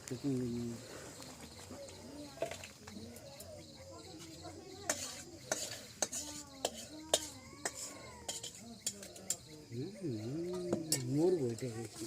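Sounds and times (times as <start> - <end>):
metal spoons and dishes clinking: 4.9 - 9.5.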